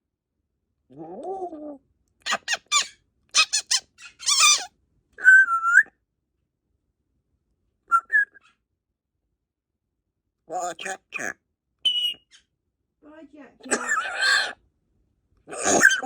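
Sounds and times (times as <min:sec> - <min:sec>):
parrot harsh calls: 0:02.2 - 0:04.7, 0:13.6 - 0:14.6, 0:15.5 - 0:16.0
parrot whistle: 0:02.3 - 0:05.9, 0:07.9 - 0:08.5, 0:11.8 - 0:12.4.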